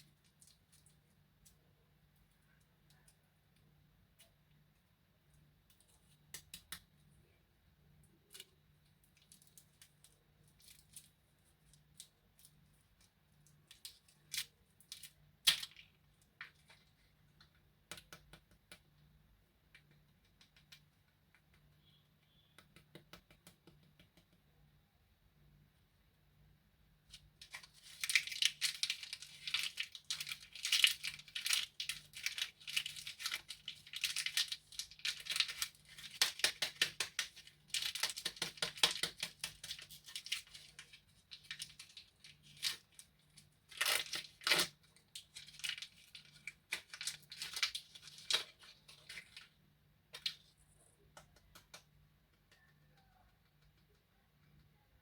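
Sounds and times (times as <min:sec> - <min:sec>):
plastic wrappers crinkling: 0:27.1 - 0:49.6.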